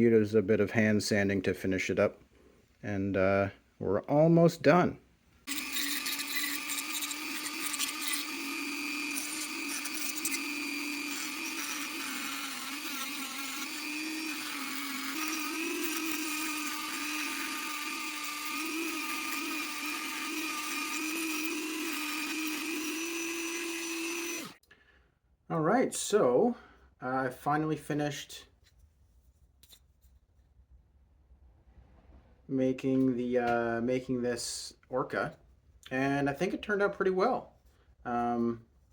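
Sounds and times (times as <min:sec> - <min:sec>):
rotary tool sanding wood: 0:05.5 - 0:24.6.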